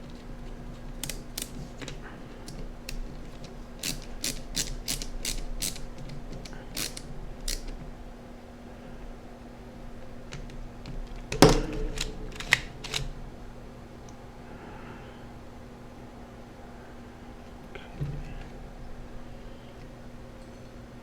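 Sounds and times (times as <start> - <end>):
screwdriver turning tiny screws: 2.5 - 7.7.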